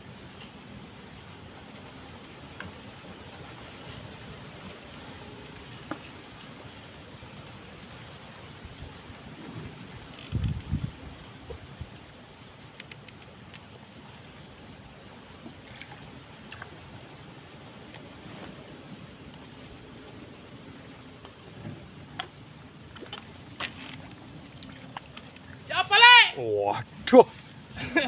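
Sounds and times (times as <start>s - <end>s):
water lapping: 0.0s - 28.0s
strong wind: 8.2s - 12.3s
faint clicks: 12.7s - 13.8s, 23.0s - 25.6s.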